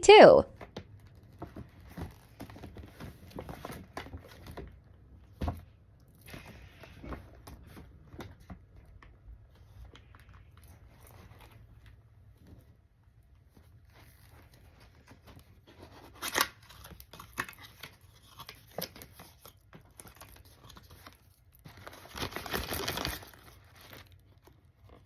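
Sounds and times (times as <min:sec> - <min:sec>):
packaging crinkling: 0:16.0 - 0:25.0.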